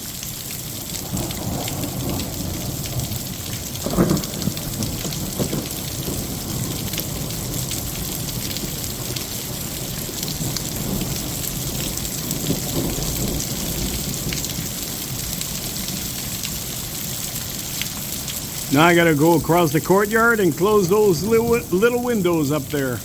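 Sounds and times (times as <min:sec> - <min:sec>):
heavy rain pouring: 0:00.0 - 0:23.0
thunder rumbling: 0:01.0 - 0:03.0, 0:03.8 - 0:09.1, 0:18.6 - 0:23.0.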